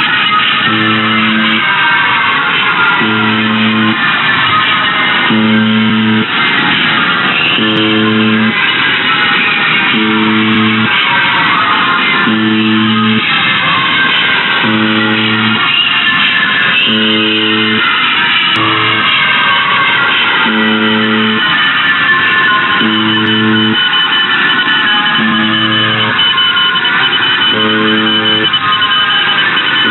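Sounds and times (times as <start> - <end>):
buzzer pulsing: 0.0 - 6.8, 7.4 - 11.3, 12.0 - 21.8, 22.6 - 29.9
garbled guitar music: 3.0 - 4.0, 18.6 - 19.1.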